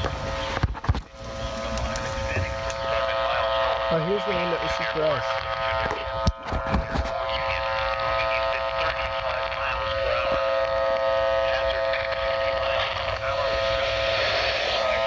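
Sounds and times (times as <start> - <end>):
noisy hiss: 0.0 - 10.6
distorted two-tone alarm: 0.0 - 15.0.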